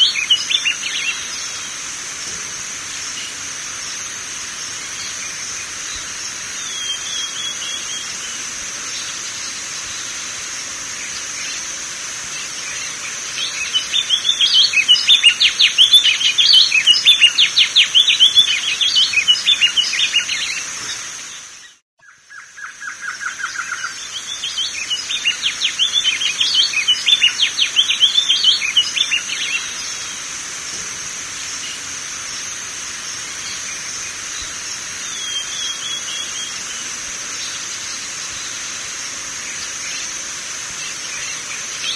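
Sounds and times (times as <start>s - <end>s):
bird singing whistled notes: 0.0s - 1.7s, 6.6s - 10.2s, 12.3s - 30.2s, 35.0s - 36.8s
high-pitched hiss: 0.0s - 41.9s.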